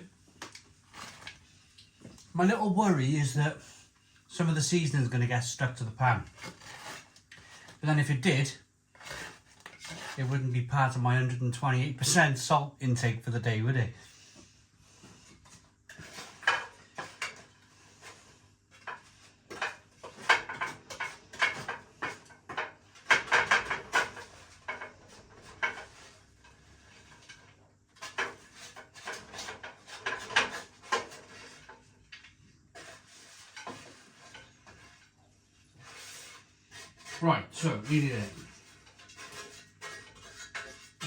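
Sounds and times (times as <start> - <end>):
spatula scraping an oven pan: 5.8 - 7.7, 8.3 - 10.5, 14.0 - 32.0, 32.7 - 41.0.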